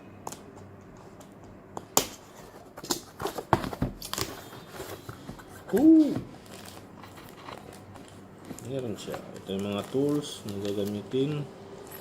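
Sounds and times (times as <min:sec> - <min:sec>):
packaging crinkling and tearing: 0:05.7 - 0:11.4.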